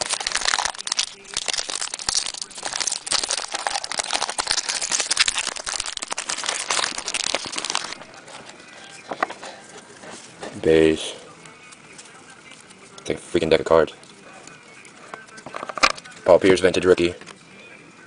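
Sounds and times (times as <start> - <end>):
card pack wrapper crinkling: 0.0 - 10.4, 14.1 - 16.3.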